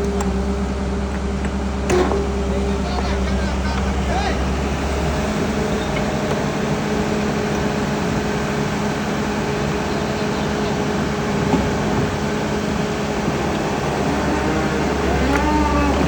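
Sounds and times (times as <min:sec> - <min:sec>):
excavator diesel engine humming: 0:00.0 - 0:16.0.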